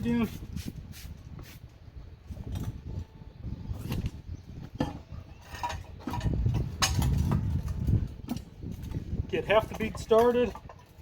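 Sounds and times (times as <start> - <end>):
tire knocking and scraping on rim: 3.8 - 11.0.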